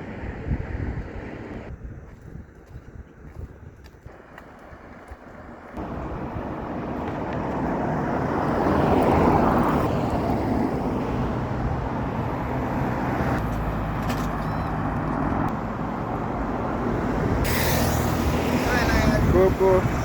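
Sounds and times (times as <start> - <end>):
vehicle engine and tyre noise: 0.0 - 20.0.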